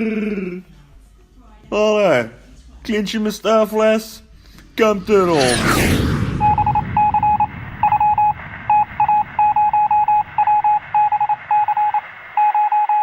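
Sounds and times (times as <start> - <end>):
low background rumble: 4.1 - 12.4
electronic beep pulses: 5.0 - 13.0.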